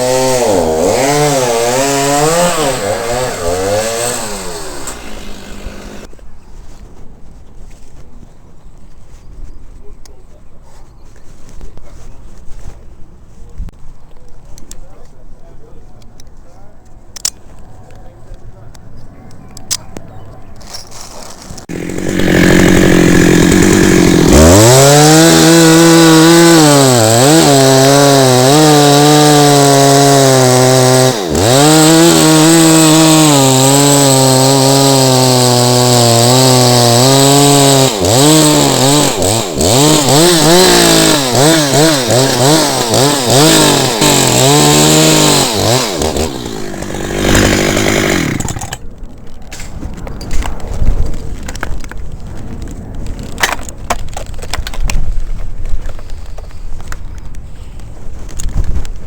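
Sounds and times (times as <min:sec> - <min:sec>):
chainsaw cutting wood: 0:00.0 - 0:06.1, 0:20.6 - 0:48.8.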